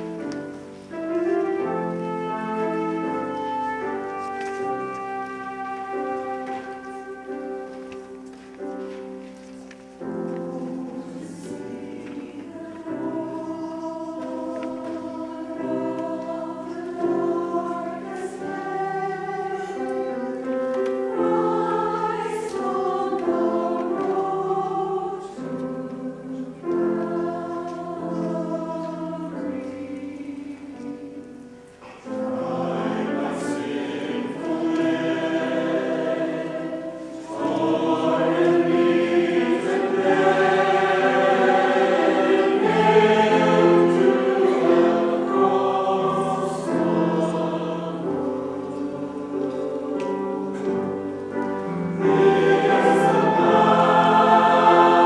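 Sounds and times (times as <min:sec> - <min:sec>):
church choir singing: 0:00.0 - 0:55.0.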